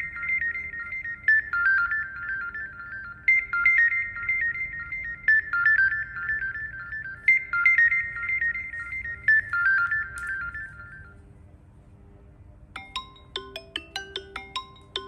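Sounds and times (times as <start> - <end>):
phone ringtone bright notes: 0.0 - 11.2, 12.8 - 15.0
ringtone with struck notes: 0.0 - 11.2, 12.8 - 15.0.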